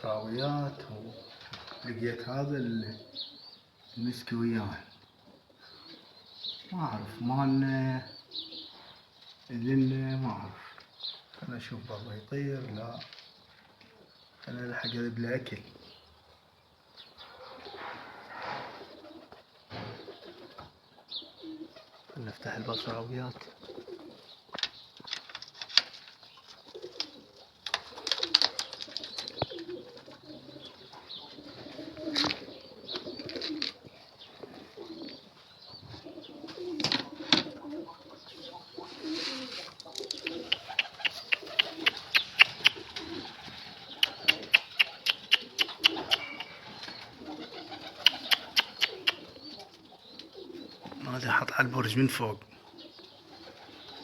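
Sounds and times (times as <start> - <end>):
pigeons cooing: 0.0 - 54.0
wings flapping: 25.0 - 30.4, 38.8 - 49.9
rapid sharp clicks: 44.0 - 46.4, 48.0 - 49.2.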